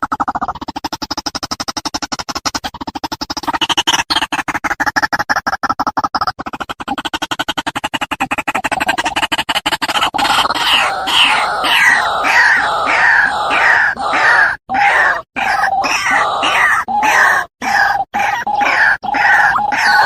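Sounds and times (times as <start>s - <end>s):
waterhen calling: 10.2s - 20.0s.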